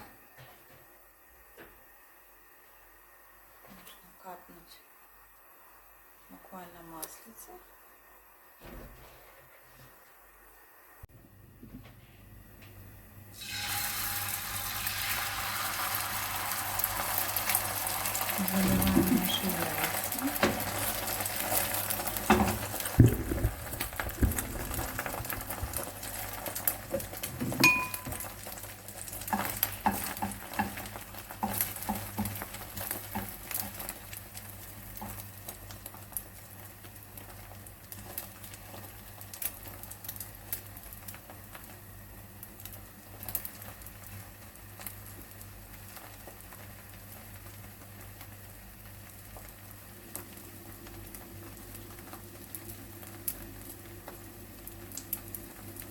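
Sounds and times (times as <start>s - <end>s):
eggs sizzling in a frying pan: 0.0s - 8.6s, 12.4s - 55.9s
utensils knocking against a pan: 22.3s - 25.8s, 26.9s - 28.3s, 29.3s - 32.4s.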